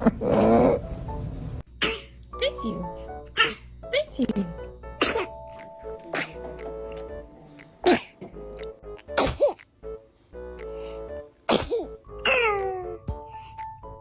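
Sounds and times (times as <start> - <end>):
light background music: 0.2 - 14.0
baby sneezing: 3.4 - 3.7, 5.0 - 5.3, 6.1 - 6.4, 7.8 - 8.2, 9.1 - 9.6, 11.5 - 12.6.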